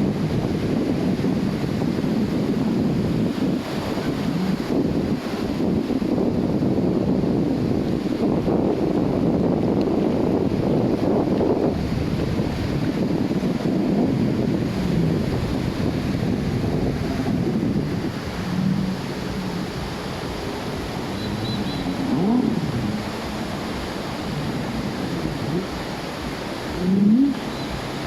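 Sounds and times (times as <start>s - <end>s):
surf washing on a beach: 0.0s - 28.0s
wind buffeting microphone: 0.0s - 28.0s.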